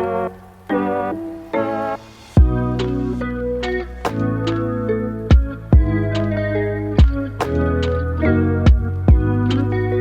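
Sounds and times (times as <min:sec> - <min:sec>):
sustained keyboard chords: 0:00.0 - 0:10.0
deep bass: 0:02.4 - 0:04.2, 0:05.3 - 0:06.4, 0:08.6 - 0:09.8.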